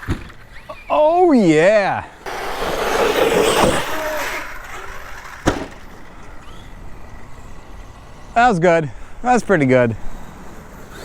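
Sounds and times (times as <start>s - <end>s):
rc car motor and tyres running: 0.0s - 11.0s
falling motor whine: 2.0s - 11.0s
sharp knock: 5.4s - 5.8s.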